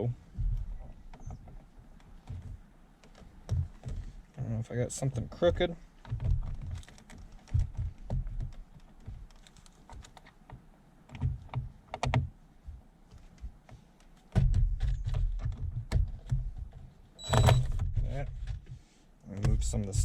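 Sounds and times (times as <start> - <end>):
low thumps: 0.0 - 2.7.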